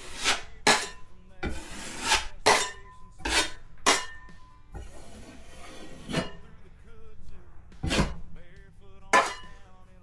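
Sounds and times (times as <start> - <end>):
drywall knife scraping: 0.0 - 6.6, 7.8 - 8.3, 9.1 - 9.6
faint music: 0.0 - 10.0.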